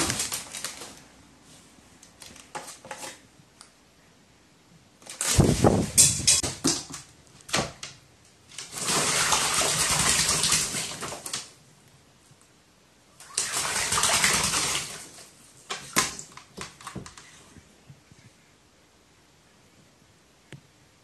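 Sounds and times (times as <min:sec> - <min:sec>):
bird splashing in water: 0:08.5 - 0:11.5, 0:13.2 - 0:16.4.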